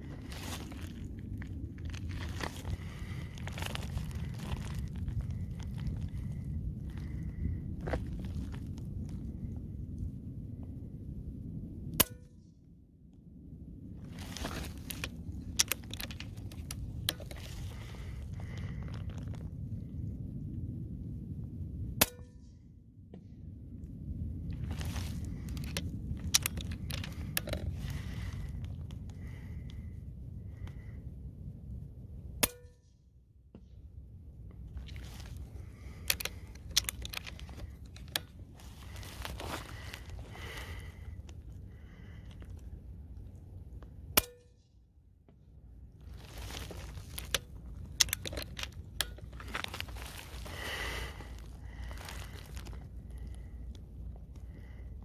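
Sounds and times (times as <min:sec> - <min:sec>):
rustling handling noise: 0:00.0 - 0:07.3, 0:14.0 - 0:19.6, 0:34.6 - 0:41.6, 0:45.9 - 0:54.7
rifle being handled clicking: 0:14.8 - 0:17.4, 0:36.0 - 0:38.3, 0:47.2 - 0:49.4.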